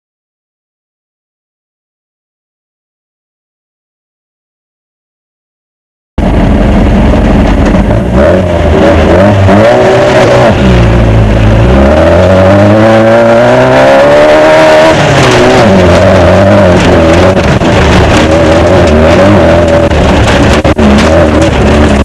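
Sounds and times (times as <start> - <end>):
race car engine revving: 6.2 - 22.0
steady rush of noise: 6.2 - 22.0.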